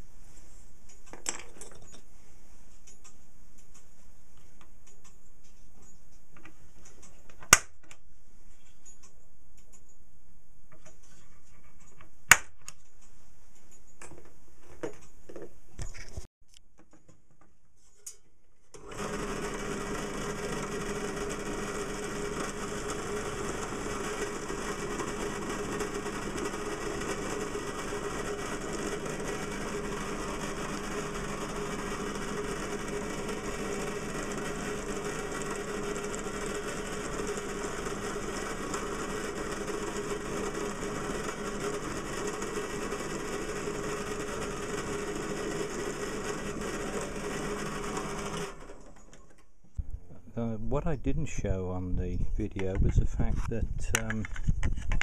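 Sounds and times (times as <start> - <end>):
small electric motor running: 18.8 - 48.7
sharp clicks and knocks: 52.6 - 53.1, 53.9 - 55.0.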